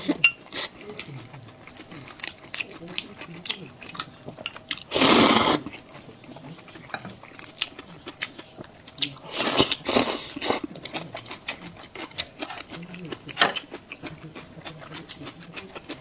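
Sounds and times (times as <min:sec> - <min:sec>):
wet chewing: 0:00.0 - 0:16.0
person slurping soup: 0:04.9 - 0:05.7, 0:09.3 - 0:10.7.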